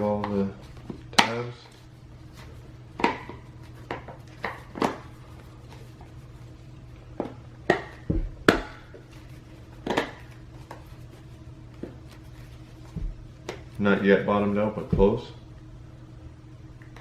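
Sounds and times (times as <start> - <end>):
dull thump: 8.0 - 8.8, 12.9 - 13.3, 14.9 - 15.2.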